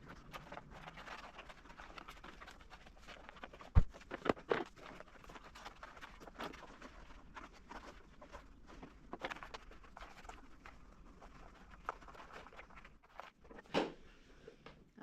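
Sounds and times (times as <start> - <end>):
handling clicks and rustling: 0.0 - 10.7.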